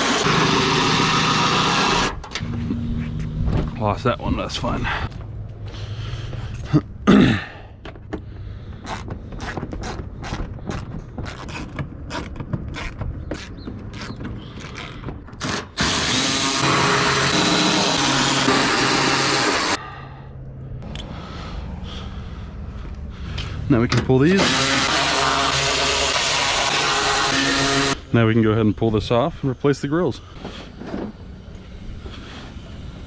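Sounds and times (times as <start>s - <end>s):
cordless drill running: 0.0s - 2.1s, 14.6s - 19.8s, 24.4s - 28.0s.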